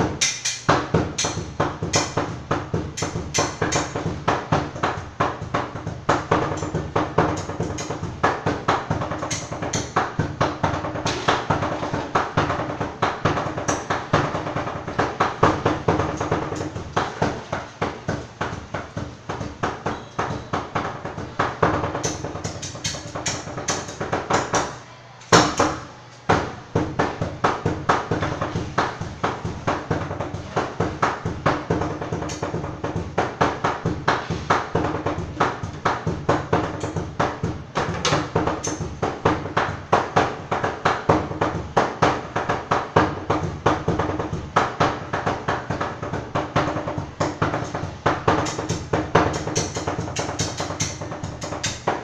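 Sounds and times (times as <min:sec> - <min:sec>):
cleavers chopping on a board: 0:00.7 - 0:32.6.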